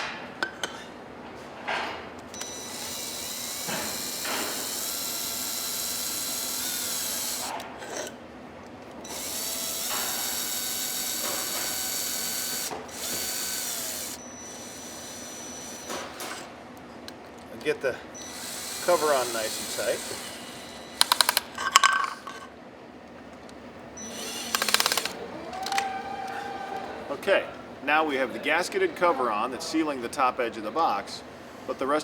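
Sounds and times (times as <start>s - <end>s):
power drill motor whir: 2.3s - 8.1s, 9.0s - 16.4s, 18.2s - 21.6s, 24.0s - 27.0s.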